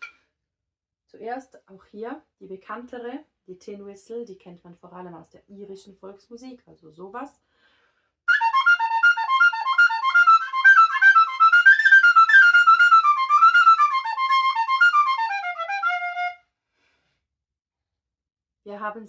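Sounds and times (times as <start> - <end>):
tin whistle folk melody: 8.3 - 16.4.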